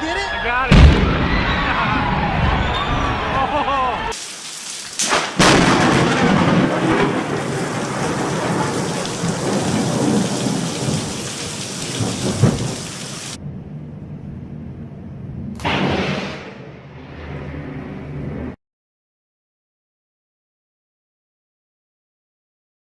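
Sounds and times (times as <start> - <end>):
thunder cracking and rumbling: 0.7 - 3.4, 5.0 - 13.4
heavy rain: 4.1 - 13.4.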